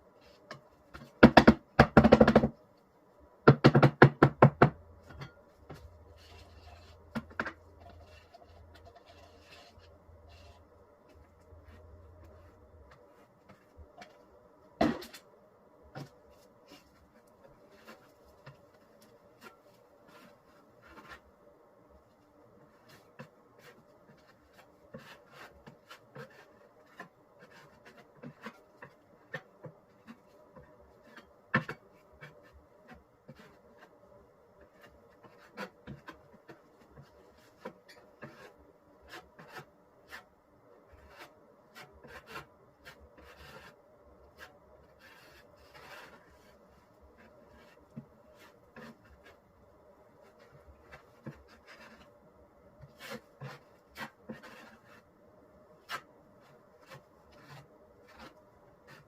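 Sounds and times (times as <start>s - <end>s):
knife scraping wet cement: 6.1s - 10.7s, 52.8s - 54.9s.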